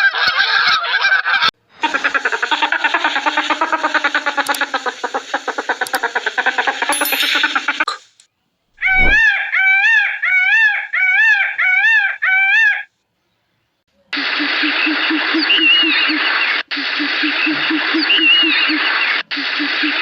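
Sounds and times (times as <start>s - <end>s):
harsh pulsing noise: 8.8s - 9.2s.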